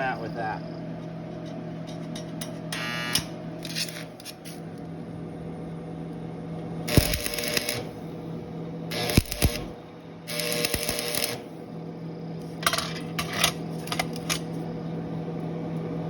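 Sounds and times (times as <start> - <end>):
steady low hum: 0.0 - 16.0
welder crackling bursts: 2.8 - 4.6, 6.9 - 8.2, 8.9 - 11.6.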